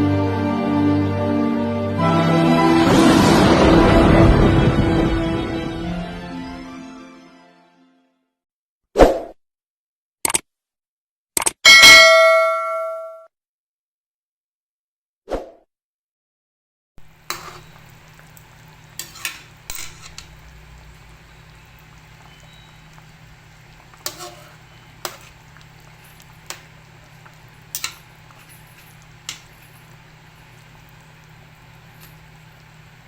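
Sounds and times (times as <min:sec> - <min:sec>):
food sizzling in a pan: 0:17.0 - 0:33.0
metal utensil clinking on pan: 0:17.3 - 0:17.8, 0:19.0 - 0:20.4, 0:24.0 - 0:25.4, 0:27.7 - 0:30.0.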